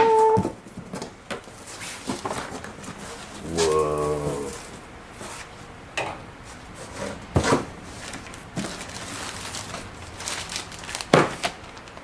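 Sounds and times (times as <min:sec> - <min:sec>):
cardboard rustling and clatter: 0:00.0 - 0:12.0
loud thump: 0:11.1 - 0:11.5.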